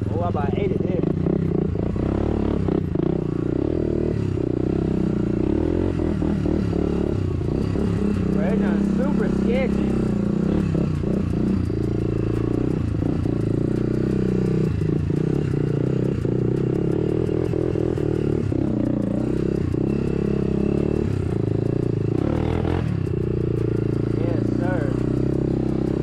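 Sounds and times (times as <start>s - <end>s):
dirt bike engine running: 0.0s - 26.0s.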